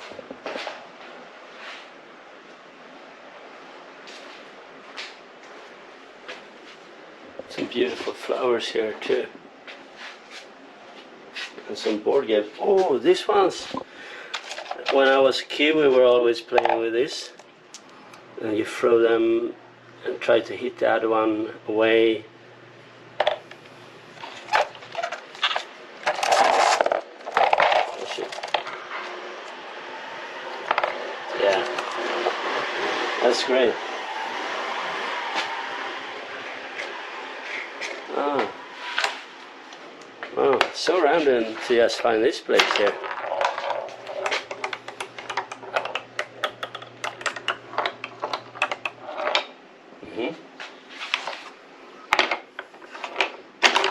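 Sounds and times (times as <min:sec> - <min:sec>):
small hard objects clattering: 0:24.2 - 0:28.9, 0:42.6 - 0:49.5.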